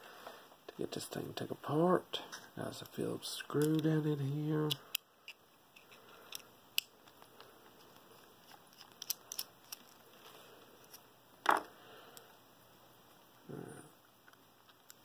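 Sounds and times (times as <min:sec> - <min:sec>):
screwdriver clicking and scraping: 0:04.7 - 0:07.2, 0:07.8 - 0:10.0.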